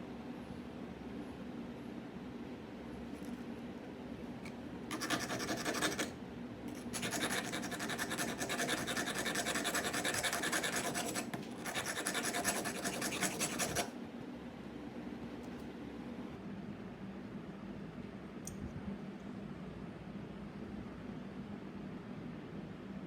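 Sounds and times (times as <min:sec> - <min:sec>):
metal file rasping: 0:04.9 - 0:06.1, 0:06.7 - 0:13.9.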